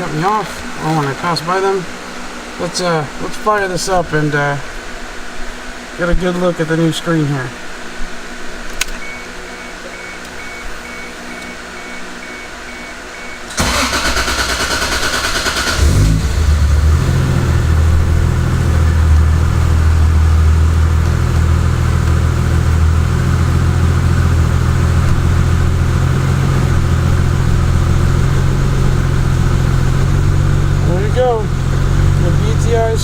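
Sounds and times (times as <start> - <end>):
car engine idling: 9.4 - 33.0
car starter cranking: 13.4 - 17.0.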